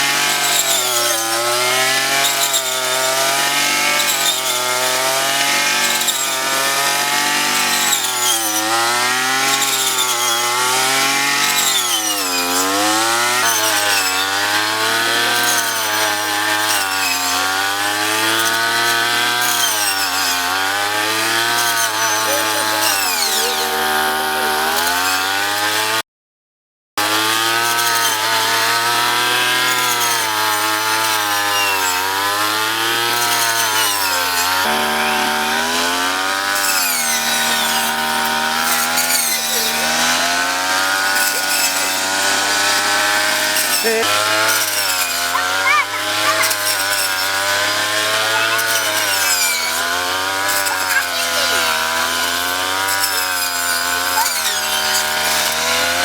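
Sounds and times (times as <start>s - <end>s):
small petrol engine running hard: 0.0s - 26.0s, 27.0s - 56.0s.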